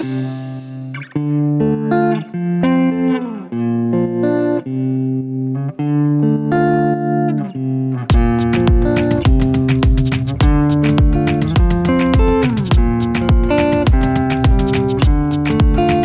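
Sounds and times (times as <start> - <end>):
plucked guitar melody: 0.0 - 16.0
drum beat: 8.1 - 16.0.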